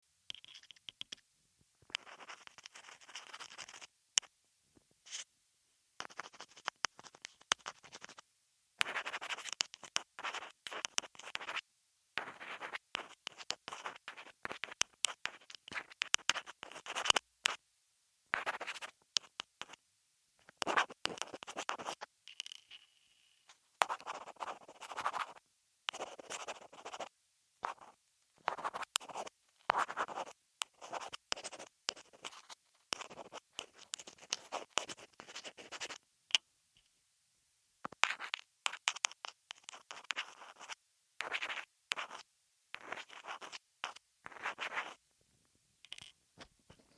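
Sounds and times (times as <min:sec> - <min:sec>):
pen scratching on paper: 0:01.9 - 0:03.9, 0:06.0 - 0:08.2, 0:08.8 - 0:11.6, 0:12.2 - 0:17.6, 0:18.3 - 0:19.8, 0:20.5 - 0:22.1, 0:23.8 - 0:36.0, 0:38.0 - 0:45.0.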